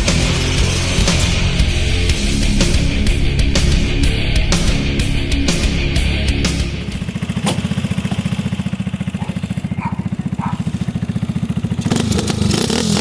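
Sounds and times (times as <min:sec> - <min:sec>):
motorcycle engine revving: 0:00.0 - 0:13.0
motorcycle engine idling: 0:00.4 - 0:13.0.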